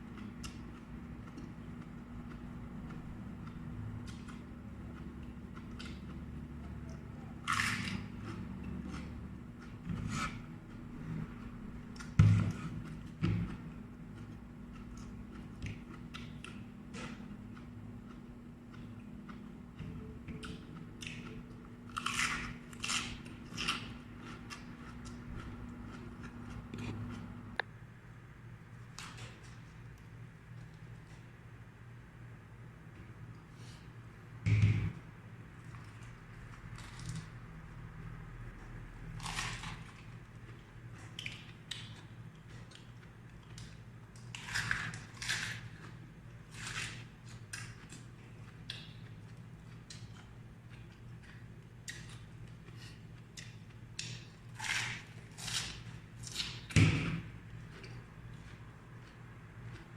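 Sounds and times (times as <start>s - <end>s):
person chewing raw vegetables: 0.0s - 27.3s, 38.5s - 56.7s, 57.3s - 59.9s
low electrical hum: 0.0s - 59.9s.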